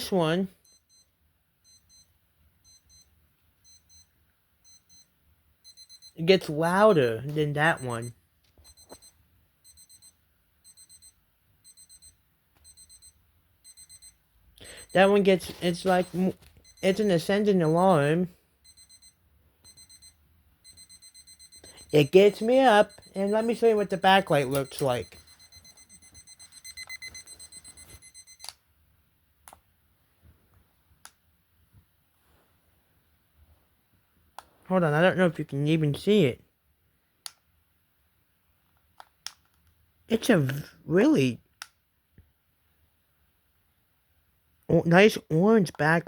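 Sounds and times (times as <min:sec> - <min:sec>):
alarm clock beeping: 0:00.0 - 0:28.5
alarm clock button clicks: 0:20.7 - 0:28.6.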